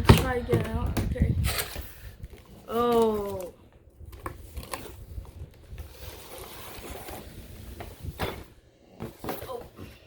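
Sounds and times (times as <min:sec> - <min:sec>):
cardboard box rustling and scraping: 0:04.4 - 0:10.0.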